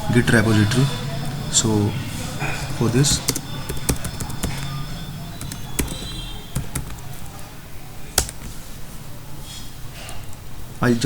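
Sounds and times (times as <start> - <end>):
computer clicks and taps: 3.2 - 4.7, 5.4 - 7.2, 8.2 - 8.6.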